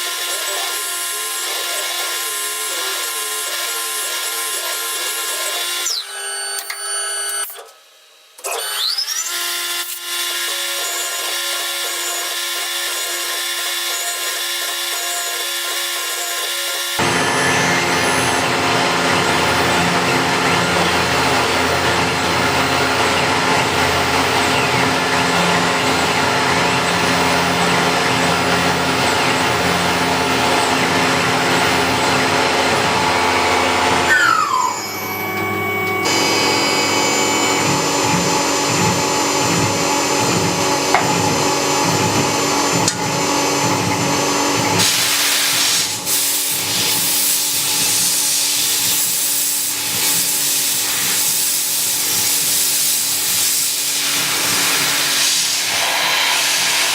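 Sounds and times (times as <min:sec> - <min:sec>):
machine tools whirring and grinding: 0:00.0 - 0:56.9.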